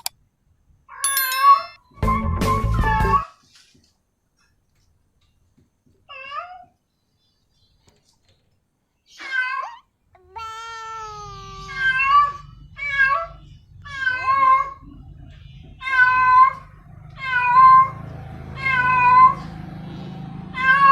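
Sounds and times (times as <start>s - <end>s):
cat meowing loudly: 10.4s - 13.2s.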